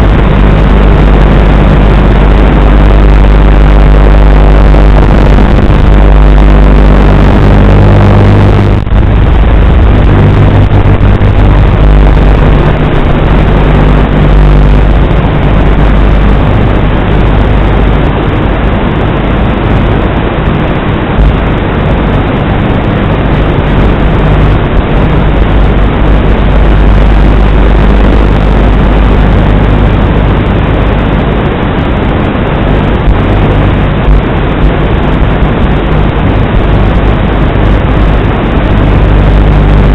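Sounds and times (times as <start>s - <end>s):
faint low hum: 0.0s - 19.7s
wind buffeting microphone: 5.1s - 39.8s.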